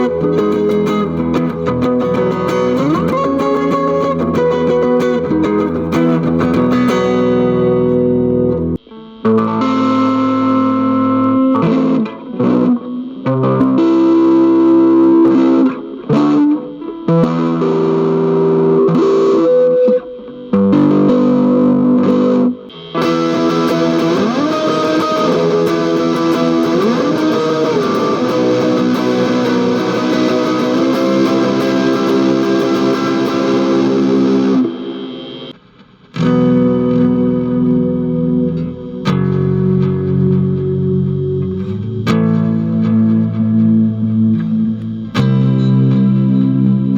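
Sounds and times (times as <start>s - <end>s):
electric guitar playing: 0.0s - 46.9s.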